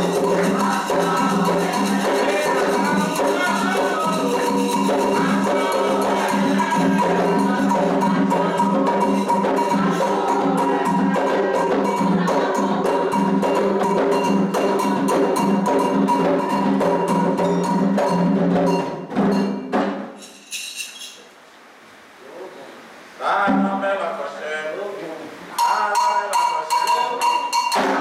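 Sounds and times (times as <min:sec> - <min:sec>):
hand drums playing rhythm: 0:00.0 - 0:20.2, 0:25.5 - 0:28.0
struck metal bell ringing: 0:25.6 - 0:27.8.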